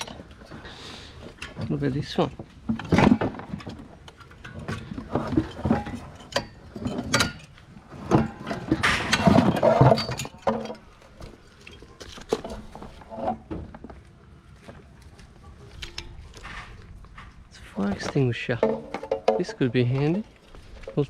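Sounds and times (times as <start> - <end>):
objects knocking and clinking: 1.3 - 10.9, 18.1 - 21.0.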